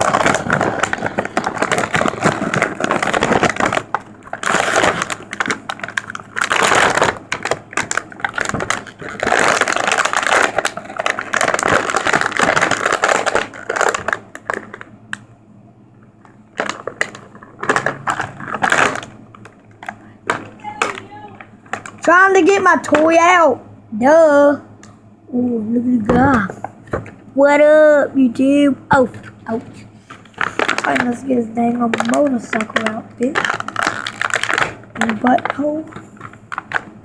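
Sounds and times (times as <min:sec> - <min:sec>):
packaging crinkling and tearing: 0:00.0 - 0:15.2, 0:16.2 - 0:22.6, 0:30.0 - 0:37.0.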